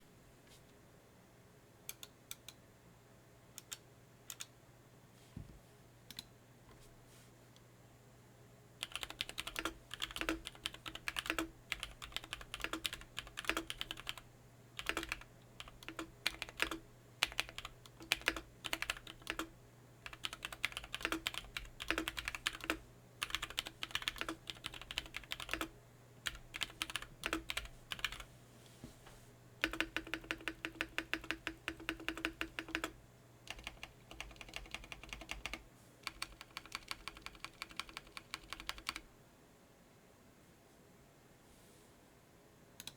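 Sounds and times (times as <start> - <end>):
mechanical keyboard typing: 3.6 - 4.5, 8.8 - 14.2, 14.8 - 28.2, 29.6 - 39.1.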